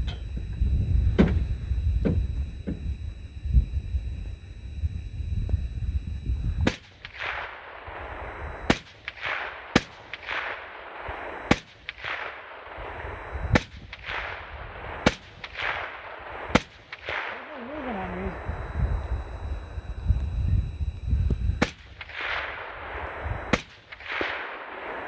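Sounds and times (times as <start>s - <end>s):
rifle shots: 6.6s - 18.3s, 21.4s - 25.0s.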